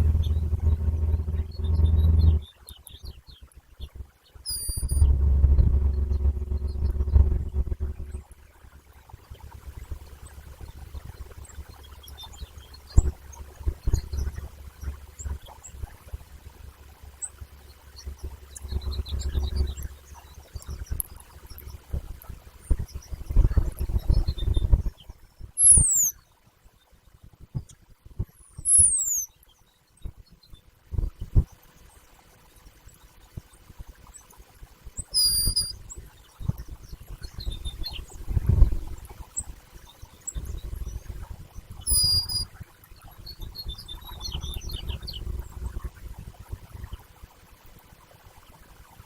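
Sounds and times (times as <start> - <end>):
low rumbling and thumps: 0.0 - 2.5, 4.7 - 8.3
birds chirping and twittering: 0.0 - 3.4, 4.5 - 5.2, 17.2 - 21.9, 22.7 - 26.2, 28.6 - 29.3, 35.0 - 41.2, 41.8 - 42.4, 43.1 - 45.4
high sweeping bird calls: 4.5 - 5.0, 25.6 - 26.1, 28.7 - 29.3, 35.2 - 35.7, 41.9 - 42.4.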